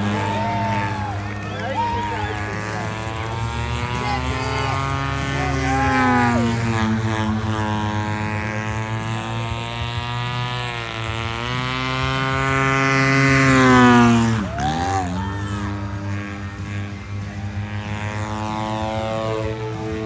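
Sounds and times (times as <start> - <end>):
model airplane engine and propeller: 0.0 - 20.0.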